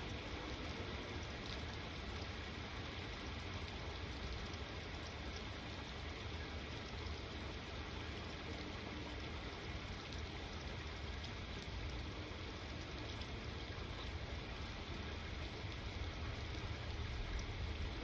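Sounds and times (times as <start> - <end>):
constant low rumble: 0.0 - 18.0
rain falling: 0.0 - 18.0.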